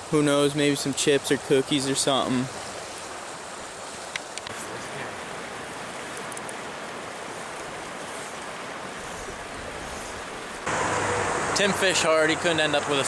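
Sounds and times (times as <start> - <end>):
stream water flowing: 0.0 - 13.0
faint clicks: 4.1 - 4.6.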